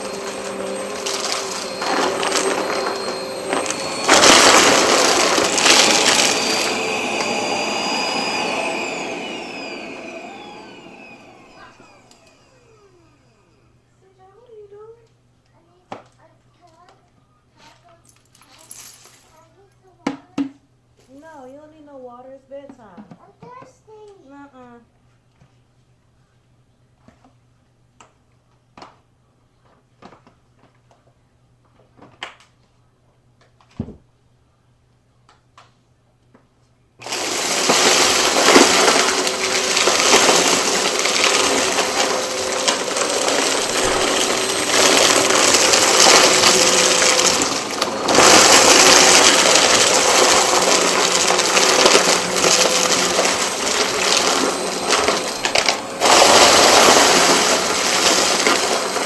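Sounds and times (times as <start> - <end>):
vacuum cleaner running: 0.0 - 13.7, 37.0 - 59.0.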